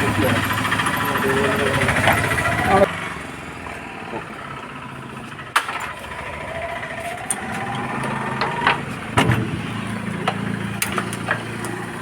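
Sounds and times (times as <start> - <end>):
small engine running: 0.0 - 12.0.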